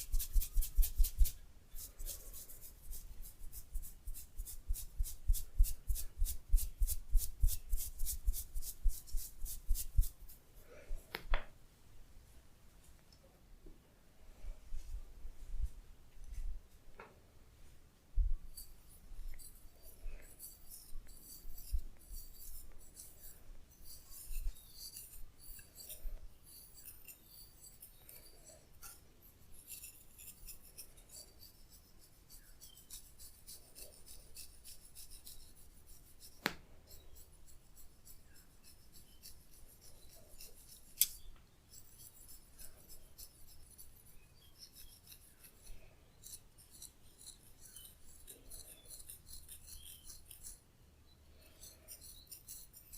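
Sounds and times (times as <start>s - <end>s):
hands rubbing hair: 0.0s - 11.4s.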